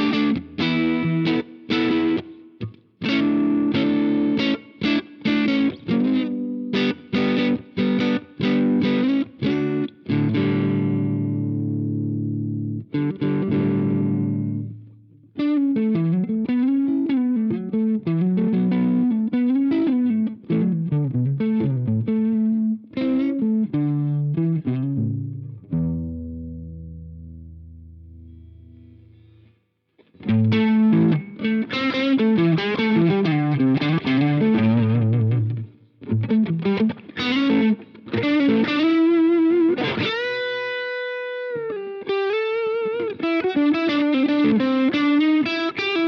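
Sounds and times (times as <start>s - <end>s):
overdriven electric guitar: 0.0s - 46.0s.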